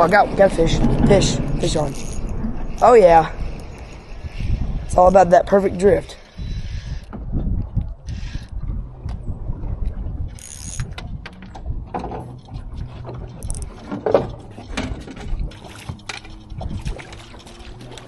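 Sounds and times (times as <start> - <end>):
steady low hum: 0.0 - 18.0
fishing reel clicking: 1.1 - 5.2, 6.2 - 7.1, 8.1 - 8.6, 10.3 - 11.1, 13.4 - 13.8.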